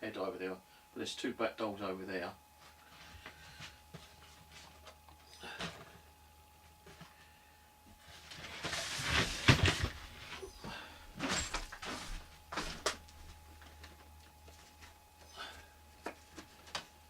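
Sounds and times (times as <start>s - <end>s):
rustling and knocking of dolls: 8.2s - 10.5s, 11.2s - 15.0s.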